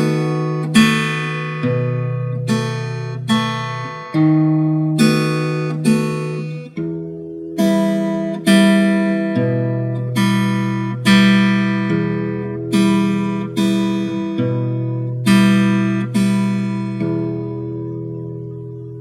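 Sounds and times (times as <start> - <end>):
acoustic guitar strumming chords: 0.0 - 19.0.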